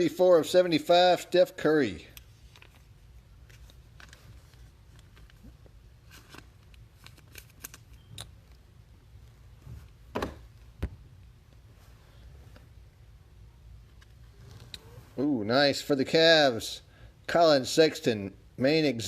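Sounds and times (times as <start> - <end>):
card sleeves rustling: 2.2 - 8.0.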